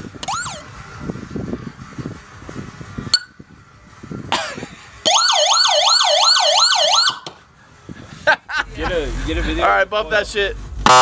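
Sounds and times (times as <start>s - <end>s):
electronic police siren yelp: 0.2s - 0.7s, 5.1s - 7.2s.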